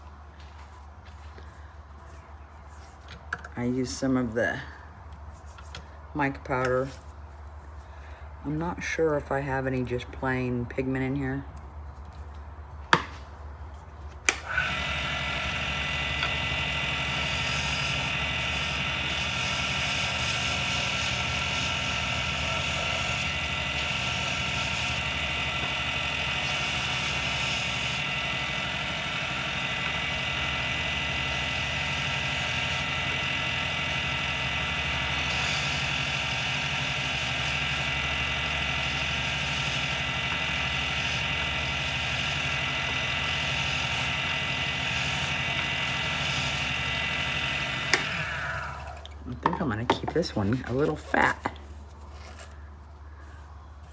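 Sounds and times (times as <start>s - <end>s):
lathe motor hum: 14.3s - 49.6s.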